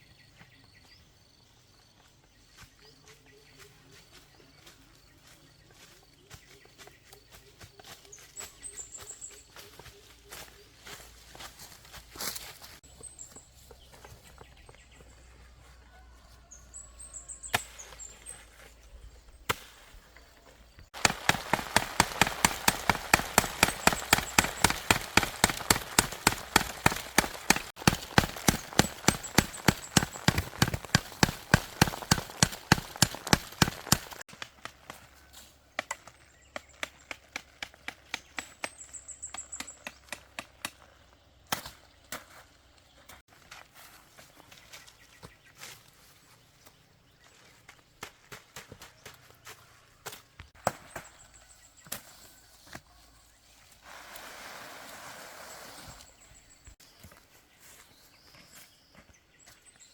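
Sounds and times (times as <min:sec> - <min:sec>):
rapid chopping knocks: 0:21.0 - 0:34.5.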